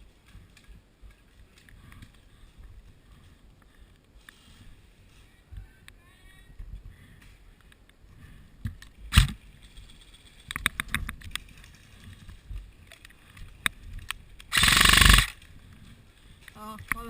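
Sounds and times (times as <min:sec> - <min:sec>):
airsoft gun full-auto burst: 0:14.5 - 0:15.4.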